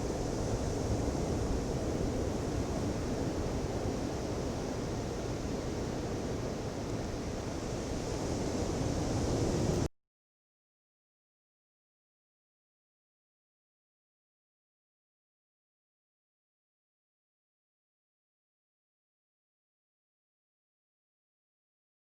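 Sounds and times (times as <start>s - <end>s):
ocean waves washing onto beach: 0.0s - 9.9s.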